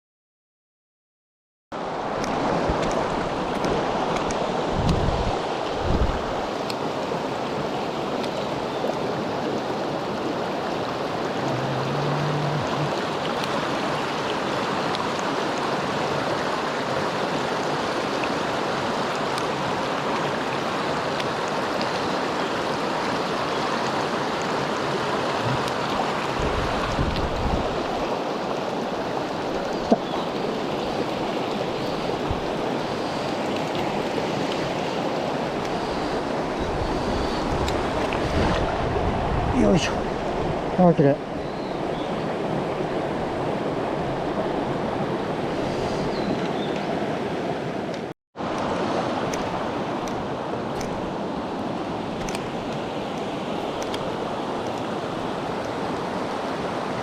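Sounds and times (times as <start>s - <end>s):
stream rushing over rocks: 1.8s - 57.0s.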